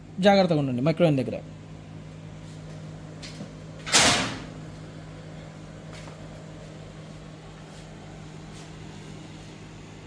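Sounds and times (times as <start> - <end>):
steady low hum: 0.0 - 10.0
microwave door shutting: 3.2 - 4.6.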